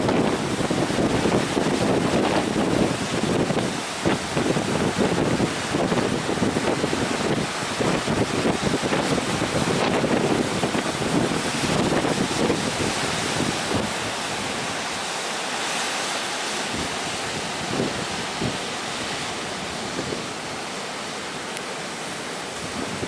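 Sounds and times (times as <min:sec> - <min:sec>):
waves breaking in heavy surf: 0:00.0 - 0:23.0
wind buffeting microphone: 0:00.0 - 0:23.0.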